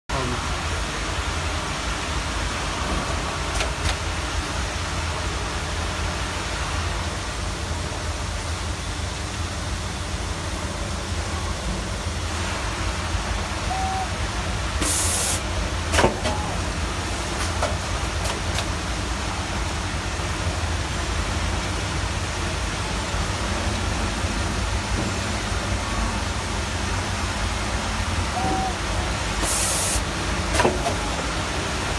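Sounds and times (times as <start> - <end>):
machine mechanical hum: 0.1 - 31.9
brief high hiss: 14.8 - 16.2, 29.4 - 30.7.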